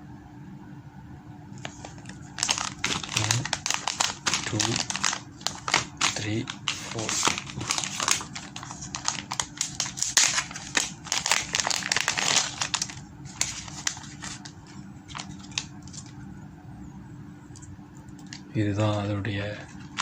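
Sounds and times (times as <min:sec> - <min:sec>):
plastic packaging crinkling: 0:01.6 - 0:16.2, 0:18.2 - 0:20.0.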